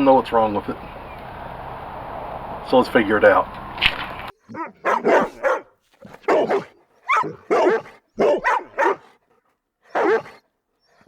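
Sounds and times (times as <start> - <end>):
dog barking: 4.5 - 9.2, 9.9 - 10.4.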